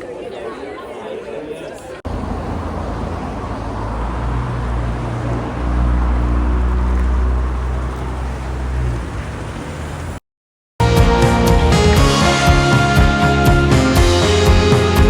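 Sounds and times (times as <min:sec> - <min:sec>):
vehicle engine humming: 0:02.1 - 0:10.2.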